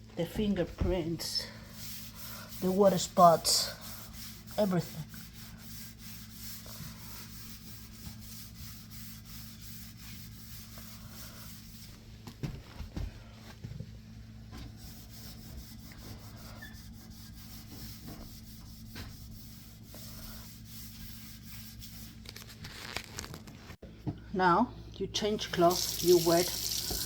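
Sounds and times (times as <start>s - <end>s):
cloth scrubbing metal panel: 0.2s - 11.9s, 14.6s - 22.2s.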